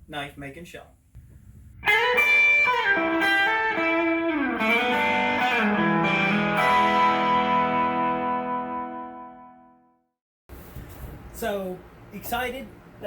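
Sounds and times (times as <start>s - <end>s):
electric guitar riff: 1.8s - 9.8s.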